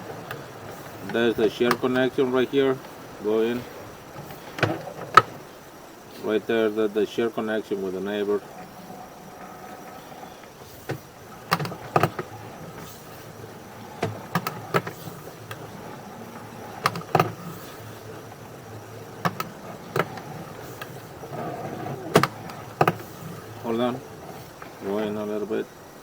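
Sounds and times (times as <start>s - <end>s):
push cable clicking and knocking: 4.2s - 5.4s, 10.8s - 12.9s, 13.8s - 24.8s
camera gear humming: 8.4s - 25.1s.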